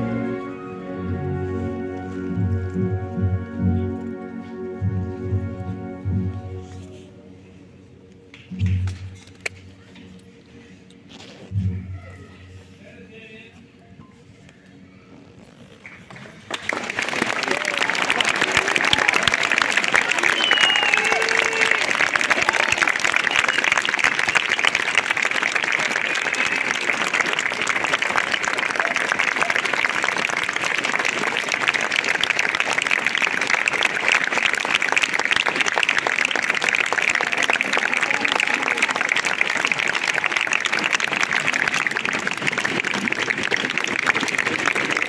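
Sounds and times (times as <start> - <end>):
crowd applauding: 0.0 - 0.7, 15.8 - 45.0.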